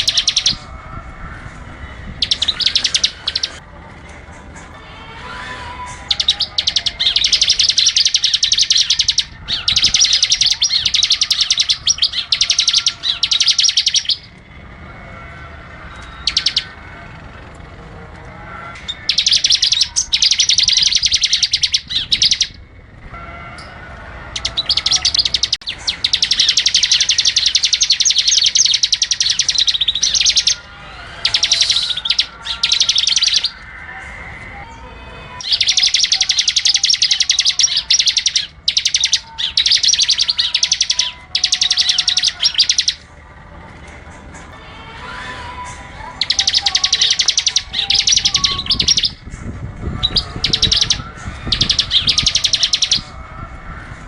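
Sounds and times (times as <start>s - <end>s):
songbird trilling: 0.0s - 0.7s, 2.2s - 3.6s, 6.0s - 14.4s, 16.0s - 16.8s, 18.8s - 22.6s, 24.4s - 33.8s, 35.4s - 43.0s, 46.2s - 49.2s, 50.0s - 53.2s.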